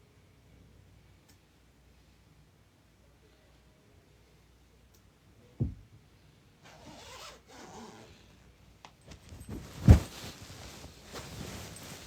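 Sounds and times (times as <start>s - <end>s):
rustling scraping handling noise: 9.0s - 12.0s.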